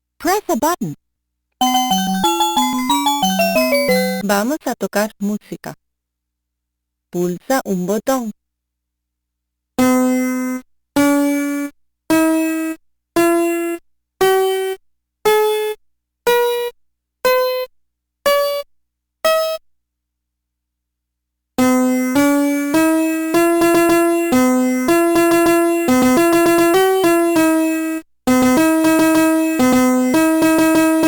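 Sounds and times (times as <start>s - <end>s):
toy electronic piano tones: 1.6s - 4.2s, 21.6s - 31.0s.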